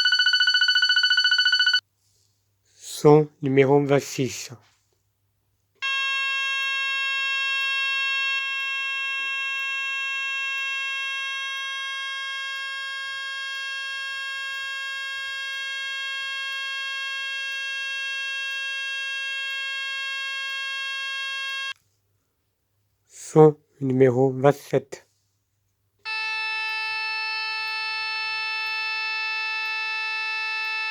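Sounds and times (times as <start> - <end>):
fire alarm sounder steady tone: 0.0 - 1.8, 5.8 - 21.8, 26.1 - 30.9.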